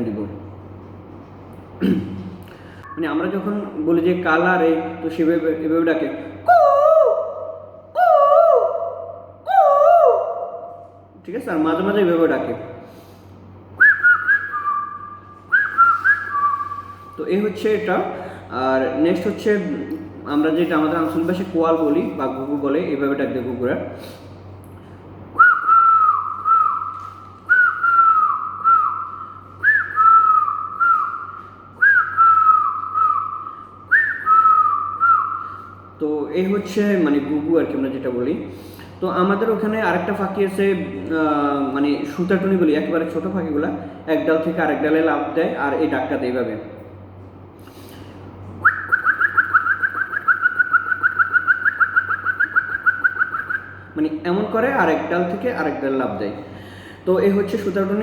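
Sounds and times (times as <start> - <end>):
man imitating bird chirps: 6.4 - 10.6, 48.7 - 53.8
man whistling dove call: 13.8 - 17.1, 25.4 - 35.7, 48.6 - 53.9.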